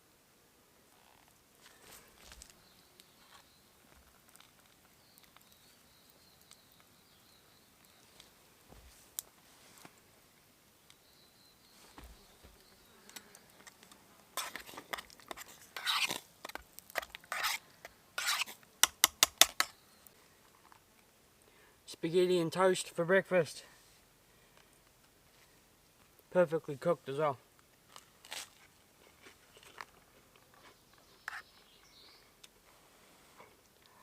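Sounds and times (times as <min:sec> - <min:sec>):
utensil scraping cooking pot: 0:14.4 - 0:17.6, 0:18.2 - 0:19.7, 0:31.3 - 0:31.5.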